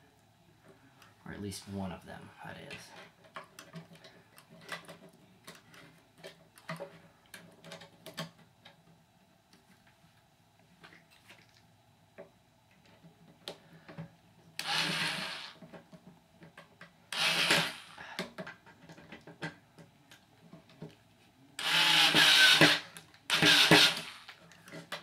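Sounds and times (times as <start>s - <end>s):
cordless power driver running: 14.6s - 15.6s, 17.1s - 18.0s, 21.6s - 24.4s.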